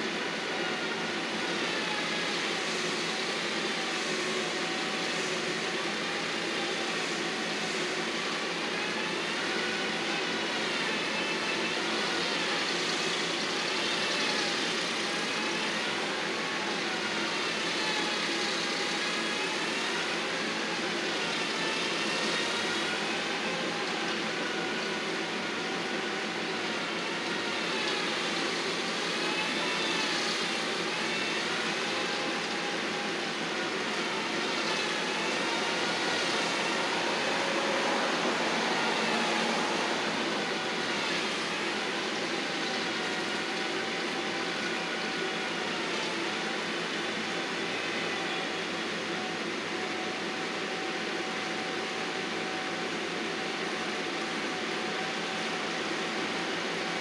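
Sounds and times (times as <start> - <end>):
machine engine running: 32.4 - 43.4.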